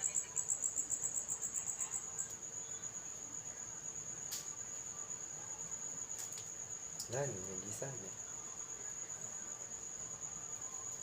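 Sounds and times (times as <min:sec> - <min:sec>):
cricket trilling: 0:00.0 - 0:11.0.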